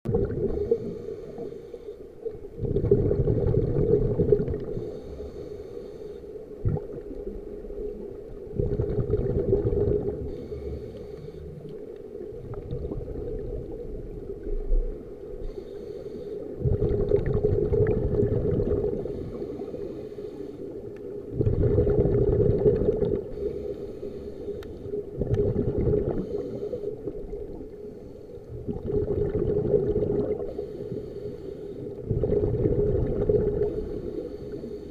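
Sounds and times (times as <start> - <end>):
exhaled bubbles gurgling underwater: 0.0 - 34.9
diver inhaling through regulator: 0.4 - 6.5, 9.5 - 11.7, 15.4 - 34.9.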